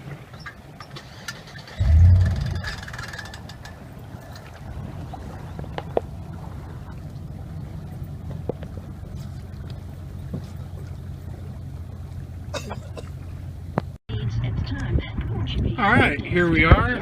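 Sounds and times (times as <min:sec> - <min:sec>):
motorboat engine drone: 0:01.8 - 0:17.0.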